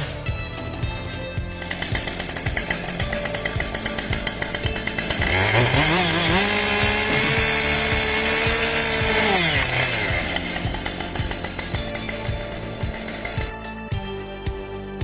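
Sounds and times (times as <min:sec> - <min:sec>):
chainsaw engine revving: 0:01.5 - 0:13.5.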